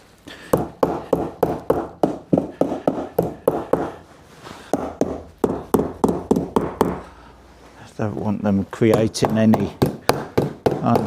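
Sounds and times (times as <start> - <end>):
hammer tapping staples into wood: 0.5 - 4.0, 4.7 - 7.0, 8.9 - 11.0.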